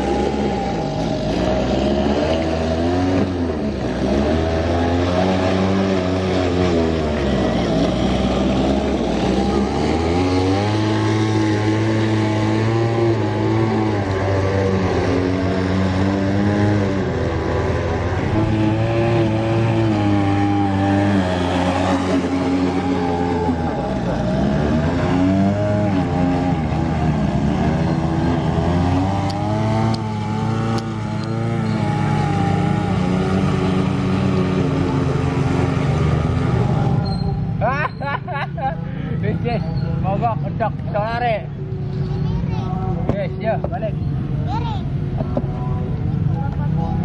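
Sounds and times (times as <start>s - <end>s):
small engine revving: 0.0s - 37.6s.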